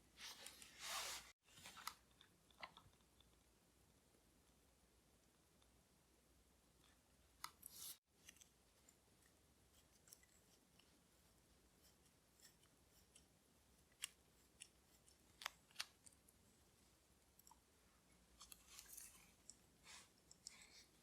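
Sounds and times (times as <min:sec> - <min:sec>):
soft rustle: 0:00.1 - 0:02.0, 0:17.8 - 0:21.0.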